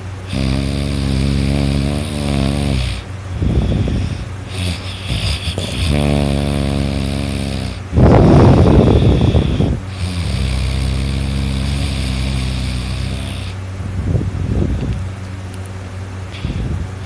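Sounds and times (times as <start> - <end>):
person snoring loudly: 0.2 - 13.6.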